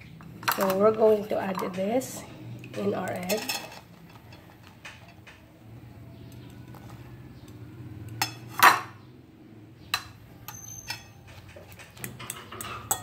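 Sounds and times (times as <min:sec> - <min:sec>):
utensil clinking against bowl: 0:10.0 - 0:13.0.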